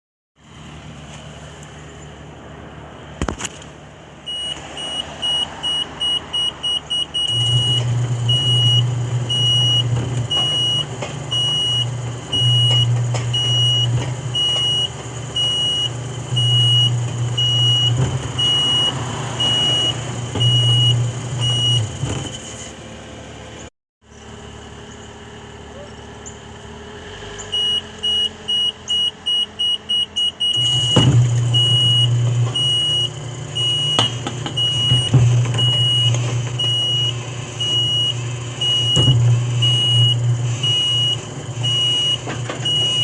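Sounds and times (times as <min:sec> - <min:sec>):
gate warning beeper: 0:04.3 - 0:21.9, 0:27.6 - 0:43.0.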